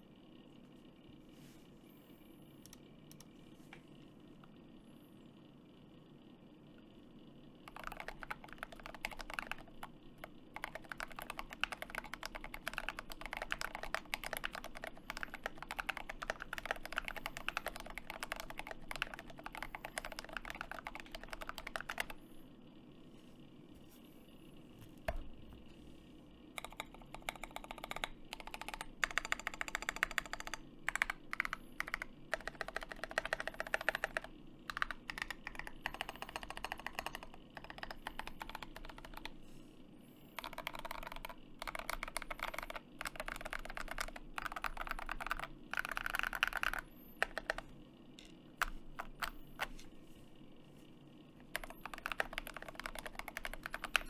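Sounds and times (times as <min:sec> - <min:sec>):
mechanical keyboard typing: 0:07.6 - 0:22.2, 0:26.6 - 0:39.4, 0:40.3 - 0:49.9, 0:51.5 - 0:54.0.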